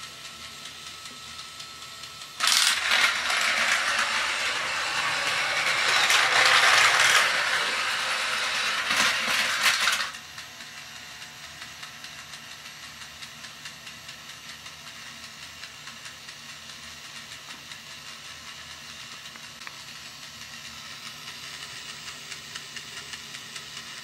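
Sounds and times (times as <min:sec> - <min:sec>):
loud rattling clatter: 0:02.4 - 0:10.3.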